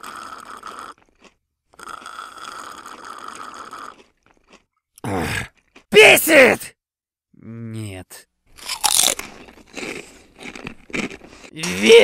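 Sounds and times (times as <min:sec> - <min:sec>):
food being chewed crunching: 0:00.2 - 0:04.8, 0:08.6 - 0:11.6.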